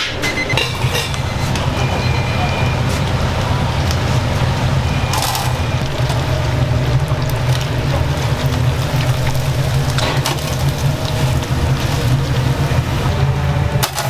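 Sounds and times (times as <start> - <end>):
kitchen machinery rumbling: 0.0 - 14.0.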